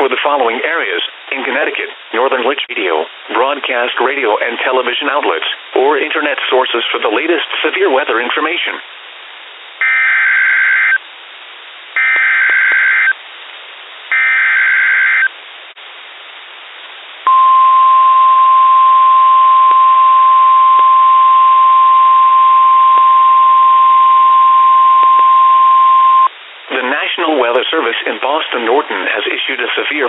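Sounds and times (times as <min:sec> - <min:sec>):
radio hiss: 0:00.0 - 0:30.0
steady warning alarm tone: 0:09.8 - 0:11.0, 0:12.0 - 0:13.2, 0:14.1 - 0:15.3, 0:17.3 - 0:26.3.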